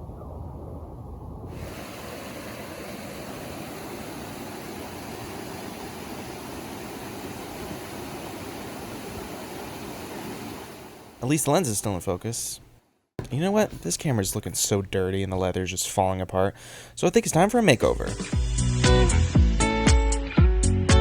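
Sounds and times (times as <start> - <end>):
steady rushing hiss: 1.5 - 14.8.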